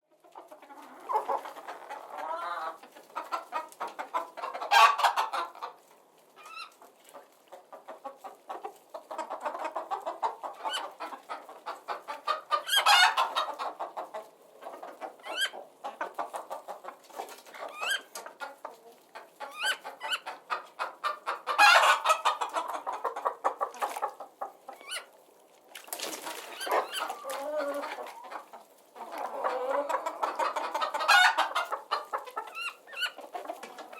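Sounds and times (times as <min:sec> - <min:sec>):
chickens clucking: 0:00.1 - 0:33.9
chicken squawks: 0:00.6 - 0:05.7, 0:09.2 - 0:14.2, 0:15.0 - 0:16.8, 0:17.6 - 0:18.6, 0:19.4 - 0:25.1, 0:26.4 - 0:33.9.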